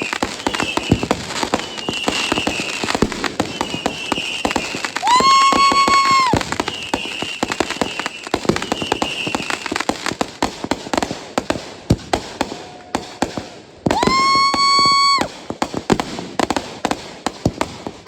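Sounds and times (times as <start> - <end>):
high firework whistles: 0.0 - 10.2, 12.1 - 15.4
fireworks crackling and popping: 0.0 - 18.0.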